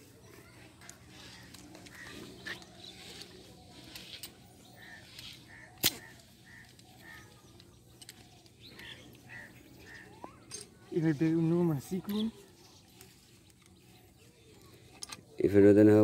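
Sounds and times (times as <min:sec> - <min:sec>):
short bird calls: 0:00.2 - 0:10.9.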